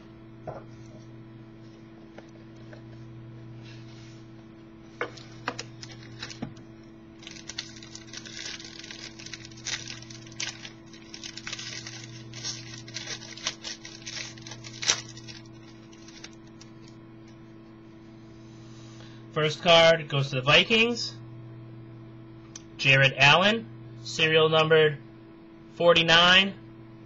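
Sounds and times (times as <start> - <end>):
low steady hum: 0.0 - 27.0
packaging crinkling and tearing: 5.1 - 6.5, 7.2 - 17.4
packaging clicks: 7.2 - 16.7.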